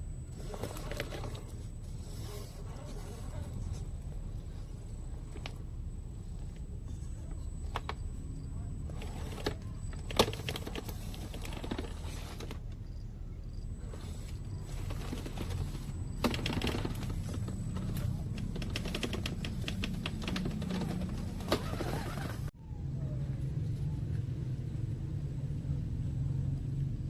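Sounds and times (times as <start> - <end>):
sharp clicks and crackles: 14.7 - 22.2.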